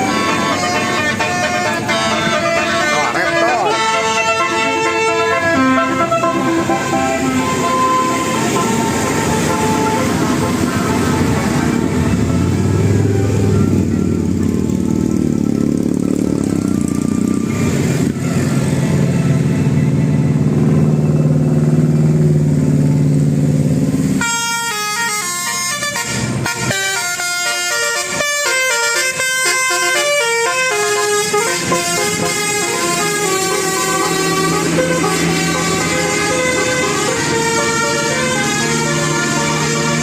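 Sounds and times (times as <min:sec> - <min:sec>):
multi-tone musical horn: 0:00.0 - 0:14.6, 0:24.2 - 0:40.0
low vehicle rumble: 0:00.0 - 0:27.2, 0:28.0 - 0:40.0.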